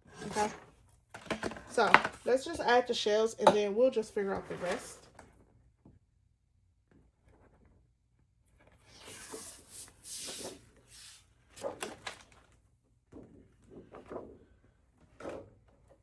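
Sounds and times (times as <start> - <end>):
craft materials rustling and scraping: 0.0 - 2.8, 4.2 - 5.2.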